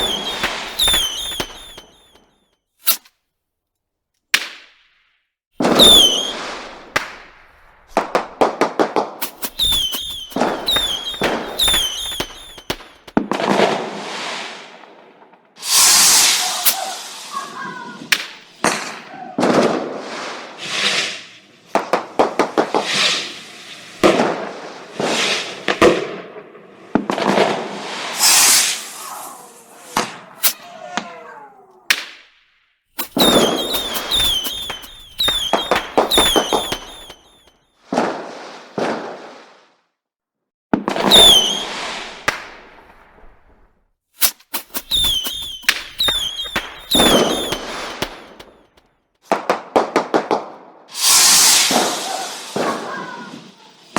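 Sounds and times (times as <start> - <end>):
short falling whistles: 0.0 - 3.0, 5.8 - 6.7, 9.2 - 13.1, 15.6 - 18.1, 28.1 - 31.3, 33.0 - 37.6, 41.1 - 41.9, 44.2 - 48.6, 50.9 - 53.3
fireworks bangs and crackling: 0.0 - 3.1, 5.6 - 32.4, 33.0 - 39.8, 40.7 - 43.6, 44.2 - 53.9.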